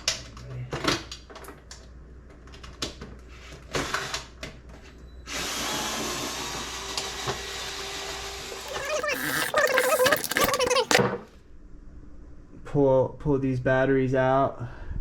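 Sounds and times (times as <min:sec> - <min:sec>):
cordless drill-driver running: 0:05.3 - 0:11.0
screws and plastic parts clicking: 0:08.6 - 0:11.0.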